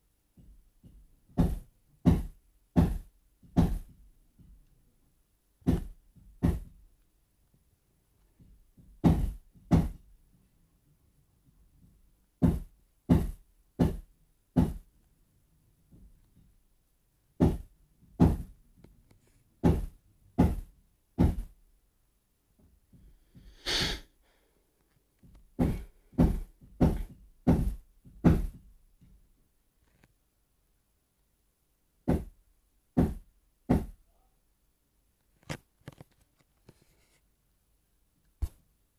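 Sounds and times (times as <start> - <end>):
hammering from next door: 0.4 - 4.5, 5.6 - 6.8, 8.4 - 10.0, 12.4 - 14.9, 17.4 - 18.6, 19.6 - 21.6, 25.6 - 28.7, 32.0 - 32.4, 33.0 - 34.0
short high rasping sound: 23.6 - 24.1.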